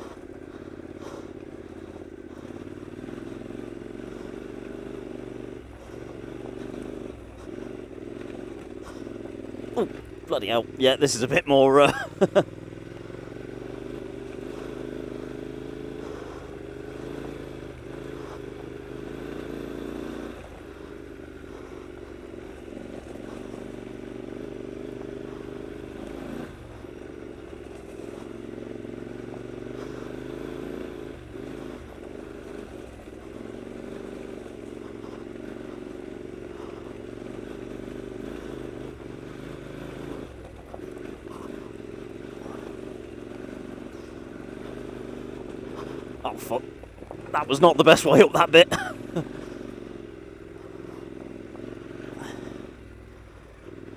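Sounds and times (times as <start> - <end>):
motorcycle engine at low revs: 0.0 - 53.9
motorcycle clattering over rough ground: 5.8 - 10.5, 21.6 - 30.1, 40.0 - 48.0.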